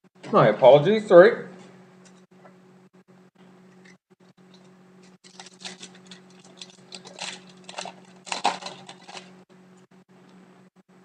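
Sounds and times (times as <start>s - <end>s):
card pack crinkling: 5.2s - 9.4s.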